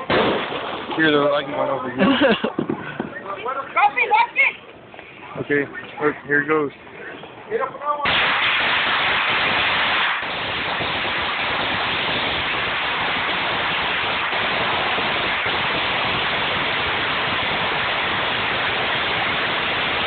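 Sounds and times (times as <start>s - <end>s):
firework fountain hissing: 8.0s - 20.0s.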